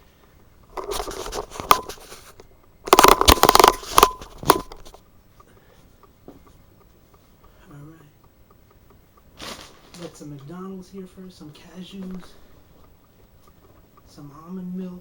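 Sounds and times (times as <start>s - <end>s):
packaging crinkling and rustling: 0.8s - 5.0s, 9.4s - 10.2s.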